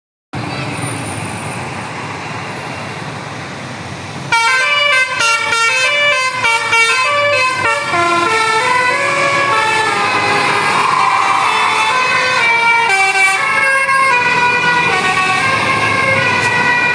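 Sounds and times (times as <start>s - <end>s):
bus engine and road noise: 0.3s - 16.9s
musical air horn playing a tune: 4.3s - 10.7s.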